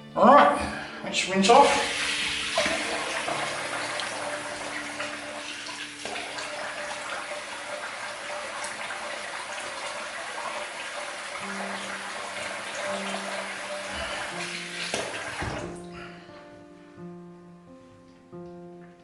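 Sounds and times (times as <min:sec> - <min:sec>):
tap water running into sink: 0:01.5 - 0:16.0.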